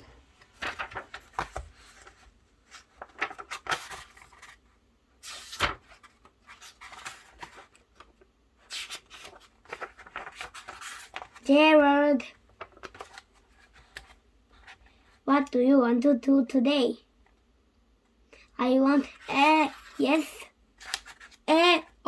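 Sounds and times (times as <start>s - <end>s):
soft clicks of pages: 0.4s - 4.6s, 12.5s - 14.9s, 20.8s - 21.4s
paper pages rustling: 0.4s - 15.2s, 19.0s - 21.5s.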